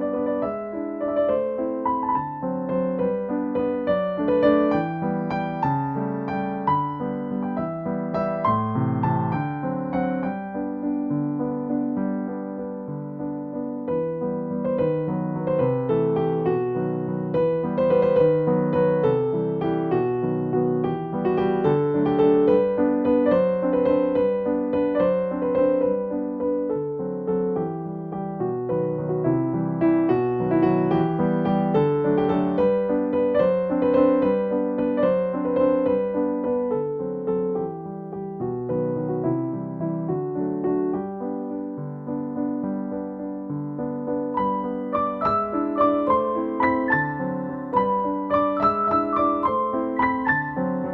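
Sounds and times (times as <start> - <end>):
soft solo piano melody: 0.0 - 50.9.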